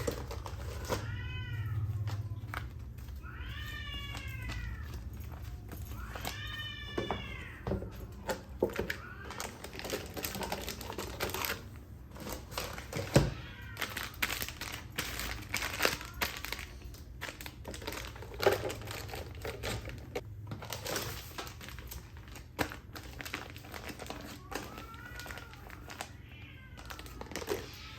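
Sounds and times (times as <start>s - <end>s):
cat meowing: 0.0s - 2.5s, 3.1s - 8.1s, 24.0s - 27.9s.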